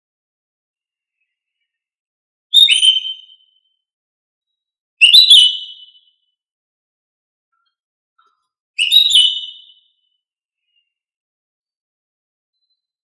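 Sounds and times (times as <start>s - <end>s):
bird whistled calls: 2.5s - 3.7s, 5.0s - 6.2s, 8.8s - 10.0s.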